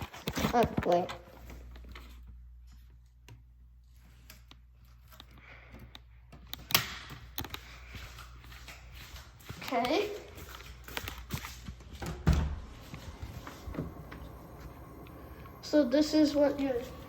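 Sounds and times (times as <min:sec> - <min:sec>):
air handler humming: 0:05.4 - 0:17.0.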